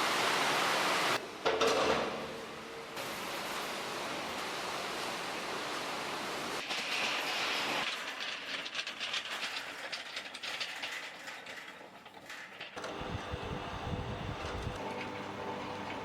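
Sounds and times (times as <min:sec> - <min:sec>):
rhythmic mechanical clatter: 0:07.9 - 0:16.0.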